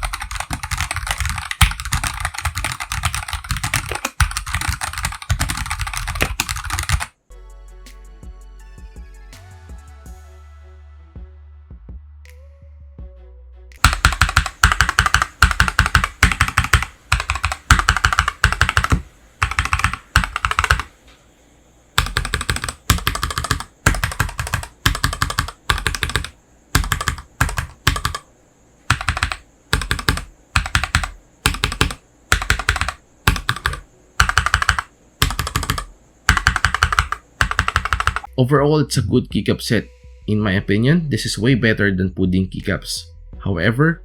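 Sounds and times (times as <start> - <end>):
mechanical keyboard key clacking: 0.0 - 7.1, 13.8 - 20.9.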